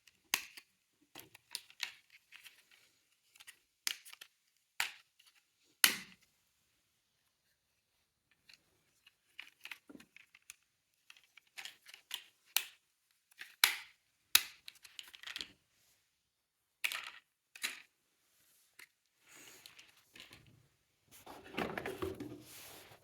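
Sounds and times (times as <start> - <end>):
toy cars clicking and clacking: 0.0 - 5.1, 9.2 - 15.5, 16.8 - 17.9.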